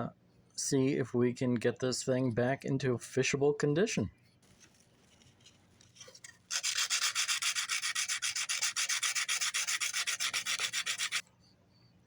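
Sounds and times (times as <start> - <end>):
sanding wood: 6.5 - 11.2.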